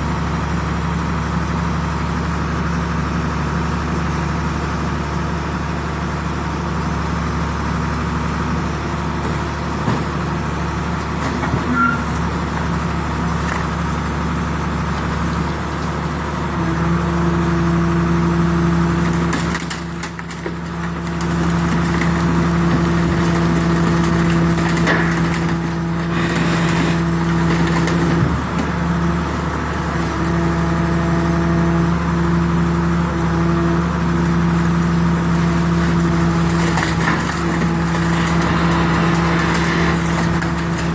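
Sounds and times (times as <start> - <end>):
baler machine drone: 24.8 - 28.3, 35.4 - 40.9
steady hum: 36.6 - 40.9.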